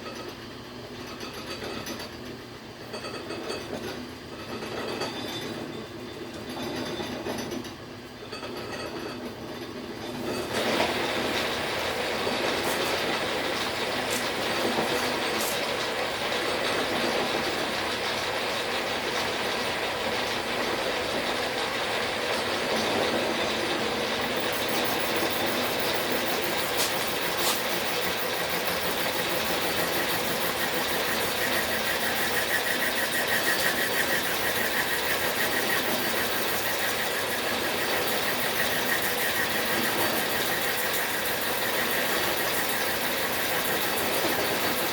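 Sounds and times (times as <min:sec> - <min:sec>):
metal lathe running: 0:10.4 - 0:44.9.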